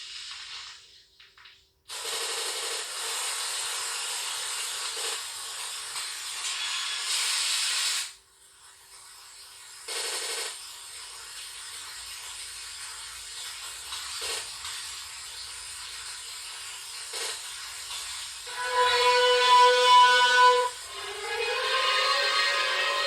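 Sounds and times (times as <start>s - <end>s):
static hiss: 3.0s - 8.2s.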